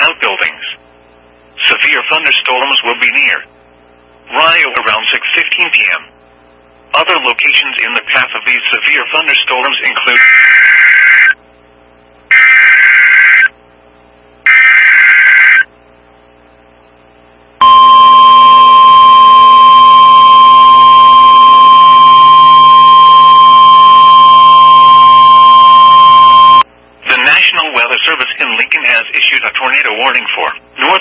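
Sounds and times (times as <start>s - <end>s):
steady alarm tone: 12.3s - 13.5s, 14.4s - 15.7s, 17.6s - 26.6s.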